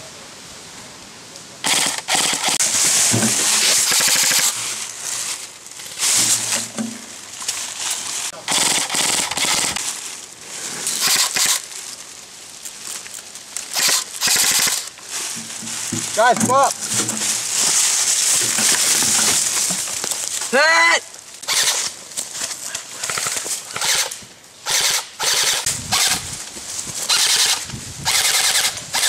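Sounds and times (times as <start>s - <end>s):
airsoft guns firing full-auto bursts: 1.6s - 2.6s, 3.6s - 4.6s, 8.5s - 9.8s, 11.0s - 11.6s, 13.8s - 14.9s, 21.5s - 21.8s, 23.0s - 26.2s, 27.1s - 29.0s.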